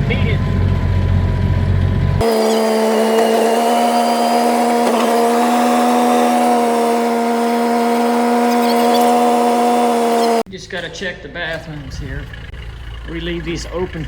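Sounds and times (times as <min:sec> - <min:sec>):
utility vehicle machine whine: 0:00.0 - 0:10.5.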